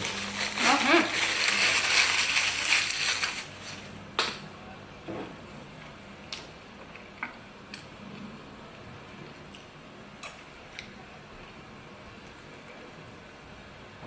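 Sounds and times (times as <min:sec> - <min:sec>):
crackly rustle: 0:00.0 - 0:04.0.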